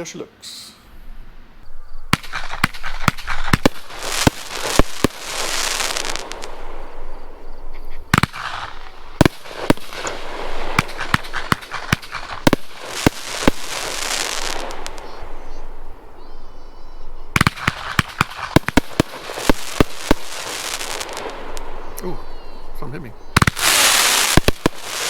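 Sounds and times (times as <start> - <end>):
crackling hiss of fireworks: 0.0 - 25.0
fireworks bangs: 1.8 - 25.0.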